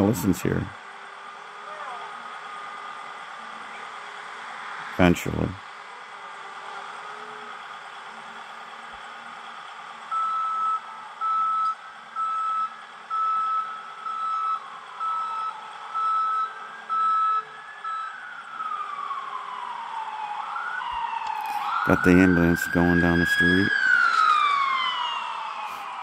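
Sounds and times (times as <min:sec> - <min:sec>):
ambulance siren: 0:00.0 - 0:26.0
engine hum: 0:00.0 - 0:26.0
backup alarm beeping: 0:10.1 - 0:18.2.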